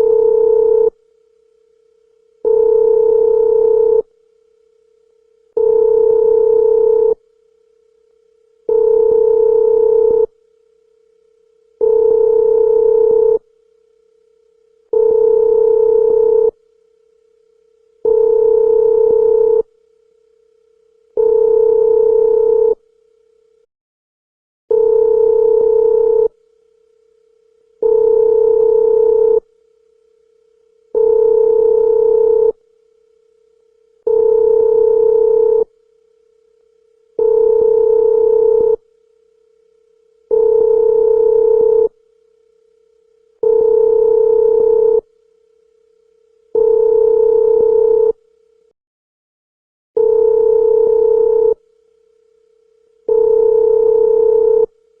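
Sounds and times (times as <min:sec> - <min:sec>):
telephone ringback tone: 0:00.0 - 0:00.9, 0:02.4 - 0:04.0, 0:05.6 - 0:07.2, 0:08.7 - 0:10.3, 0:11.8 - 0:13.4, 0:15.0 - 0:16.5, 0:18.0 - 0:19.6, 0:21.2 - 0:22.8, 0:24.7 - 0:26.3, 0:27.8 - 0:29.4, 0:31.0 - 0:32.6, 0:34.1 - 0:35.7, 0:37.2 - 0:38.8, 0:40.3 - 0:41.9, 0:43.4 - 0:45.0, 0:46.6 - 0:48.2, 0:50.0 - 0:51.6, 0:53.1 - 0:54.7.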